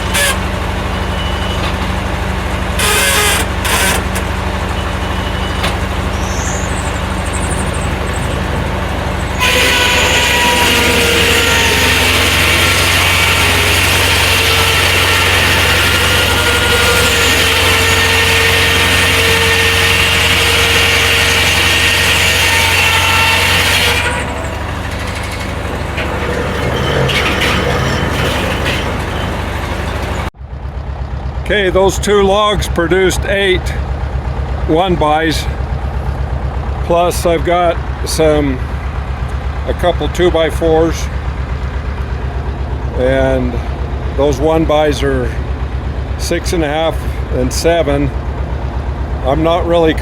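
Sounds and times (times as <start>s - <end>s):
saw cutting rushing noise: 0.0s - 0.6s, 2.4s - 4.8s, 5.8s - 30.3s
sawmill engine running: 0.0s - 50.0s.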